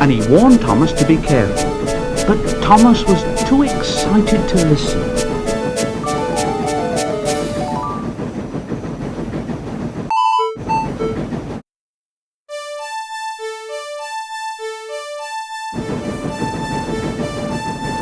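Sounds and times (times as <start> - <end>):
electric piano tune: 0.0 - 8.0
short musical notes: 0.0 - 8.0
steam locomotive rushing: 0.0 - 11.6, 15.7 - 18.0.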